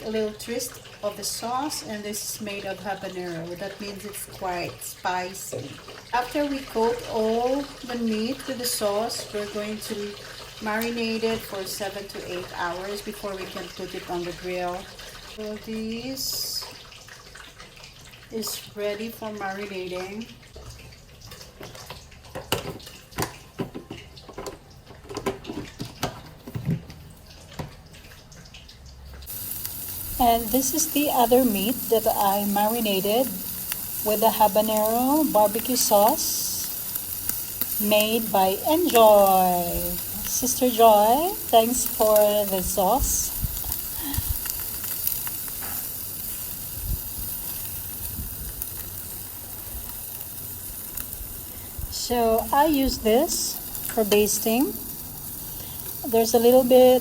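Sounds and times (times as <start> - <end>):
water dripping: 0.0 - 57.0
meat sizzling on a grill: 5.9 - 16.7, 29.2 - 57.0.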